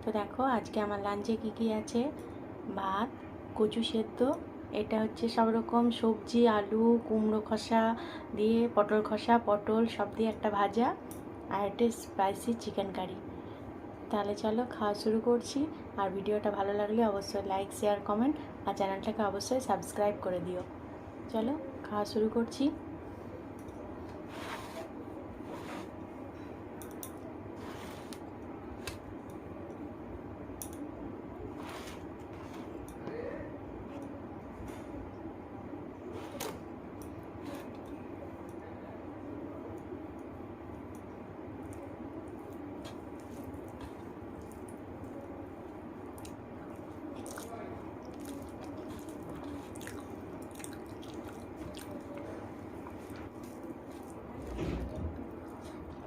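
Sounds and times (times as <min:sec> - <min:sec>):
steady low hum: 0:00.0 - 0:56.0
wet chewing sounds: 0:46.1 - 0:54.5.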